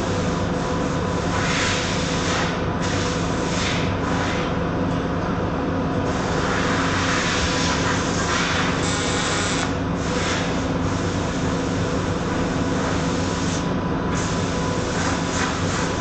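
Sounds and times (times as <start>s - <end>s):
welding machine electrical hum: 0.0s - 16.0s
welding arc hiss: 6.1s - 11.6s, 12.8s - 16.0s.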